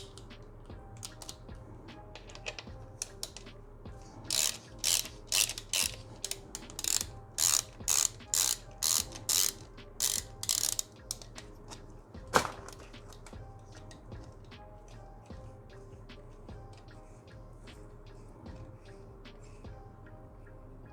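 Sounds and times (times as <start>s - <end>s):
ratchet wrench clicking: 0.0s - 1.4s, 2.0s - 11.8s.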